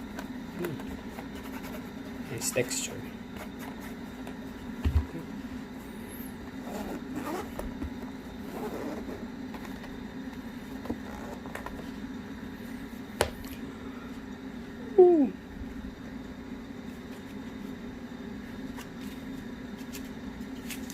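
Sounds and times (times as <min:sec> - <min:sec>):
steady low hum: 0:00.0 - 0:20.9
zipper being worked: 0:06.6 - 0:07.6, 0:08.4 - 0:09.3.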